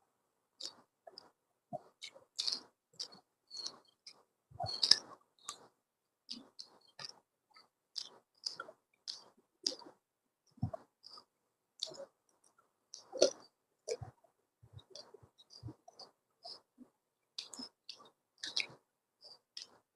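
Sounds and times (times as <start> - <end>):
person chewing: 2.0 - 5.6, 8.0 - 9.9, 13.0 - 14.0, 17.4 - 18.7.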